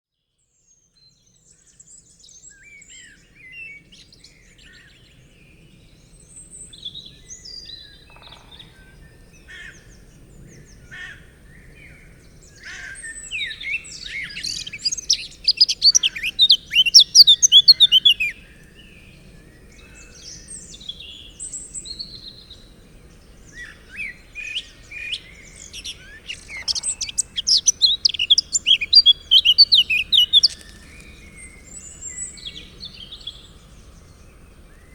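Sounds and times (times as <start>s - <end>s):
birds singing and calling: 2.4s - 34.9s
loud rapid birdsong: 11.6s - 34.9s.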